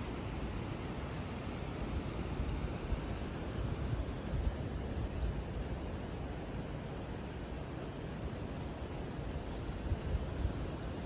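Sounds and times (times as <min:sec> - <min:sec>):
wind rumble on microphone: 0:00.0 - 0:11.0
faint bird chirps: 0:05.1 - 0:05.6.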